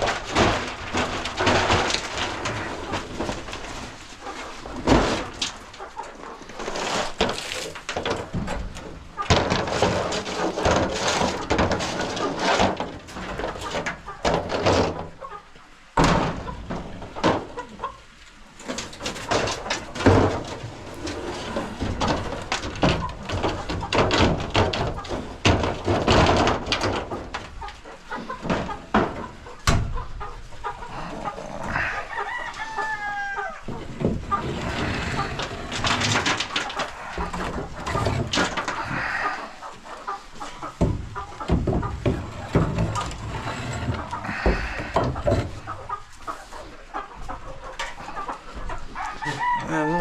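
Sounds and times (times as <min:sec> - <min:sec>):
hens clucking: 0:00.0 - 0:50.0
rooster crowing: 0:31.7 - 0:33.7, 0:48.9 - 0:50.0
metal scraper scraping and knocking: 0:40.7 - 0:45.8.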